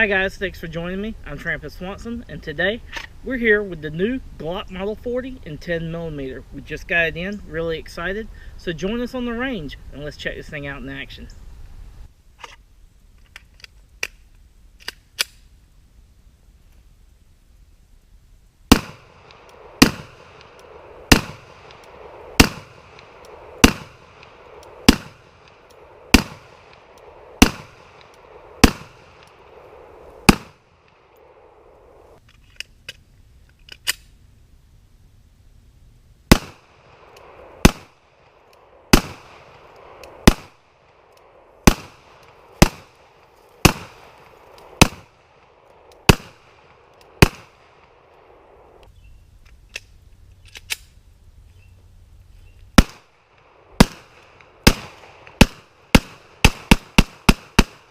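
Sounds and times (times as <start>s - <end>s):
pistol shots: 18.7s - 29.6s, 30.2s - 31.0s, 36.3s - 38.0s, 38.9s - 40.6s, 41.6s - 45.4s, 46.0s - 48.0s, 52.8s - 57.9s.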